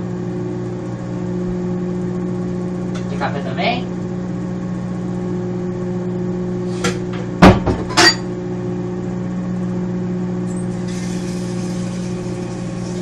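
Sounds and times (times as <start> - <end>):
microwave oven humming: 0.0 - 13.0
kitchenware knocks and clinks: 7.4 - 8.3.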